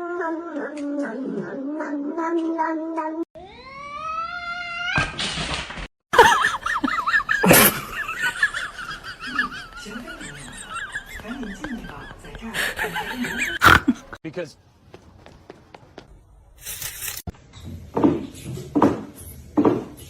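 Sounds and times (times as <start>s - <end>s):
cats yowling and meowing: 2.9s - 5.2s.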